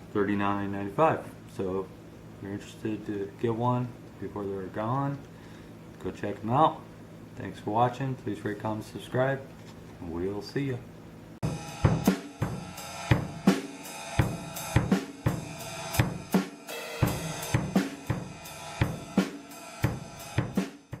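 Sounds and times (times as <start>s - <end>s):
drum kit beat with cymbals: 11.4s - 21.0s
pitched backing music: 11.4s - 21.0s.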